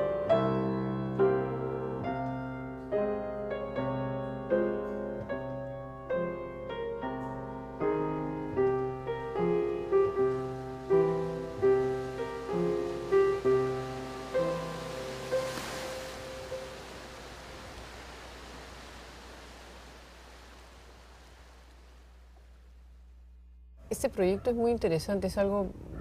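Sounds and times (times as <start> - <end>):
slow gentle piano melody: 0.0 - 19.0.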